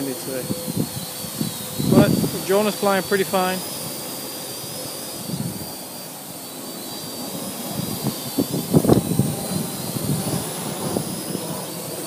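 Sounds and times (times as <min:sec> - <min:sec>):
drone propellers whining: 0:00.0 - 0:12.0
wind buffeting microphone: 0:00.3 - 0:04.1, 0:05.1 - 0:05.8, 0:07.3 - 0:12.0.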